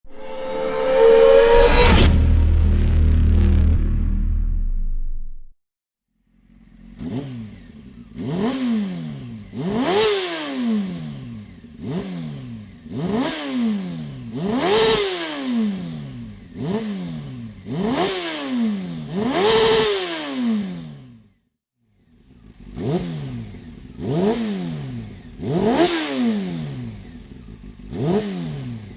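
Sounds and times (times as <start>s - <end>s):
motorcycle engine revving: 6.2s - 28.9s.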